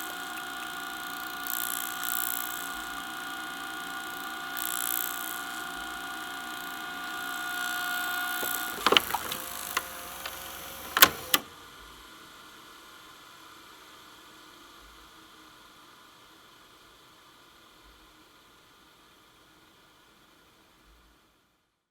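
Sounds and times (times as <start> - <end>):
loud plastic clacks: 8.4 - 11.5
mechanical clicks: 8.4 - 11.5
tape mechanism whirring: 8.4 - 11.5.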